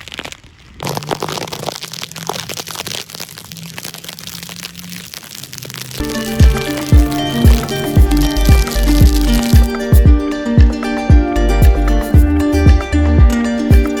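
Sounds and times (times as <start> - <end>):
music with deep booming beat: 6.0 - 14.0.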